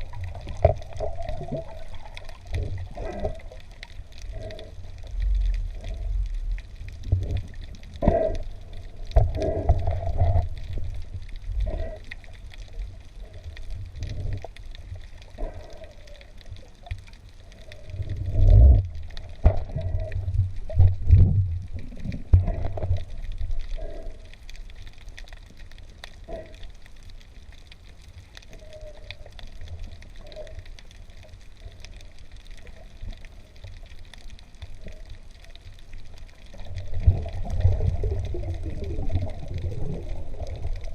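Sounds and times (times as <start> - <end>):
low rumbling water surges: 0.0 - 40.9
water sloshing and gurgling: 0.0 - 40.9.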